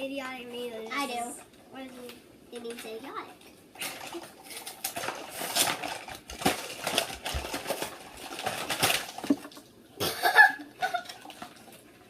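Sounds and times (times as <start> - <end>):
packaging tearing and crinkling: 3.8 - 9.6.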